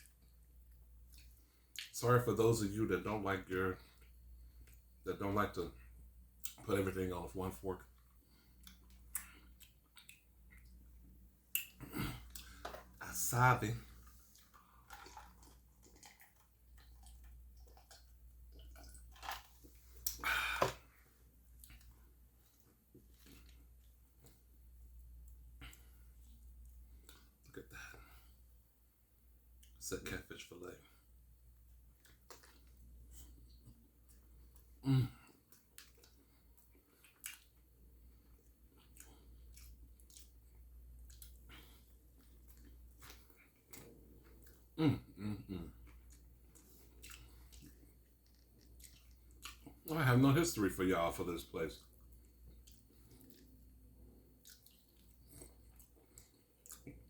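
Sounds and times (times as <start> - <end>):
chewing with wet mouth clicks: 0.0 - 2.0, 7.9 - 13.0, 13.9 - 20.2, 21.4 - 27.6, 31.9 - 34.7, 35.3 - 44.8, 45.8 - 49.9, 51.8 - 57.0
wet mouth clicks and smacks: 8.6 - 10.8, 11.5 - 12.8, 35.5 - 37.6.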